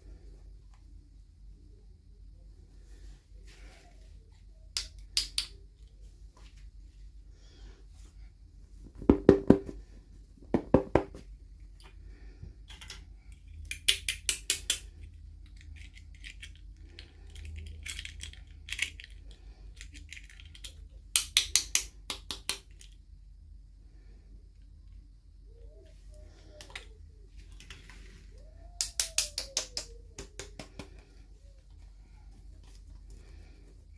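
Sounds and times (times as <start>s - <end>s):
plastic toy pieces clicking: 13.6s - 23.0s.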